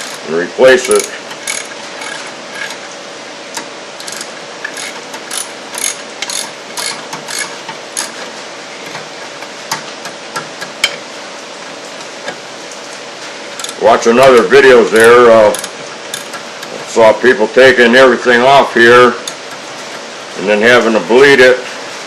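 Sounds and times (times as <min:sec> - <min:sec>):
socket ratchet clicking: 0:03.6 - 0:08.2, 0:15.5 - 0:16.4.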